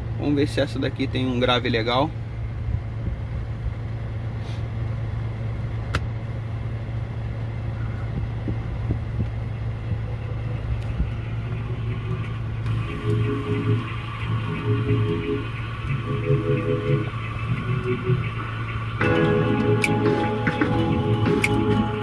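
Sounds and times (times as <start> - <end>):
car engine idling: 0.0 - 22.0
music from car speakers: 11.3 - 22.0.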